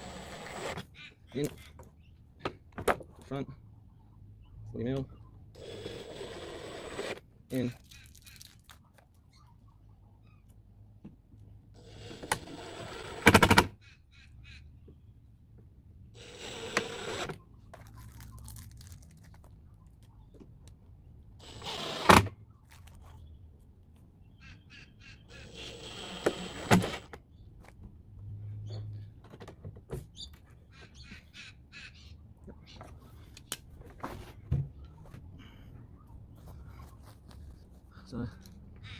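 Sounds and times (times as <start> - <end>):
power drill driving screws: 0.0 - 0.8, 5.6 - 7.2, 11.8 - 13.7, 16.2 - 17.4, 21.4 - 22.3, 25.3 - 27.2.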